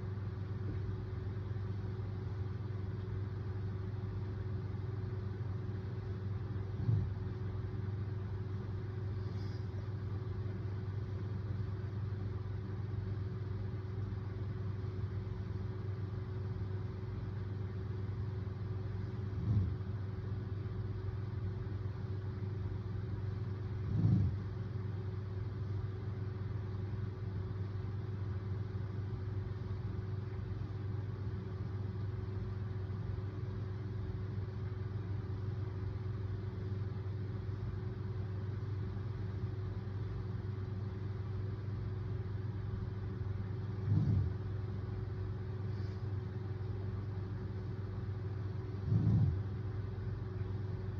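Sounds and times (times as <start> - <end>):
steady low hum: 0.0 - 50.9
man snoring: 19.4 - 19.8, 23.8 - 24.4, 43.8 - 44.4, 48.8 - 49.5.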